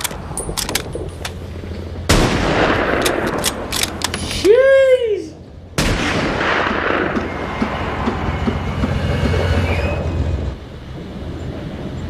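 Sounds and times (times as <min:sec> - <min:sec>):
deep engine rumble: 0:00.0 - 0:12.0
tank tracks clanking and squealing: 0:07.2 - 0:10.6.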